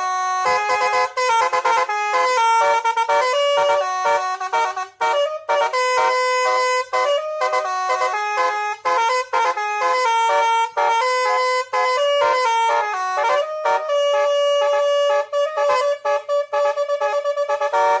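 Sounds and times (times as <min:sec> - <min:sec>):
musical horn playing a tune: 0:00.0 - 0:18.0.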